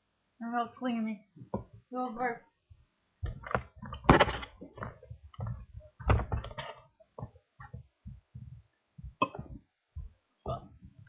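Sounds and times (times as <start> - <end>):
person burping: 9.2 - 9.5.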